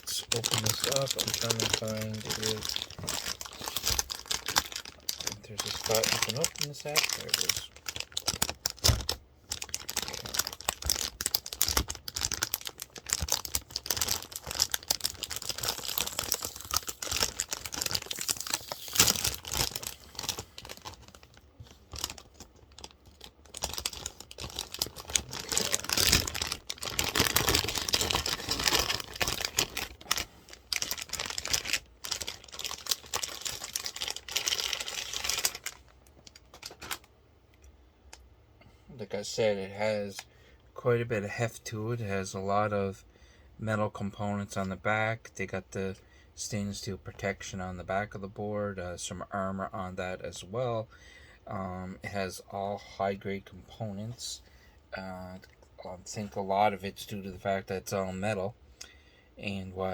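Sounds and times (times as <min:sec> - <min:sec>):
cardboard packaging rustling: 0:00.0 - 0:37.1.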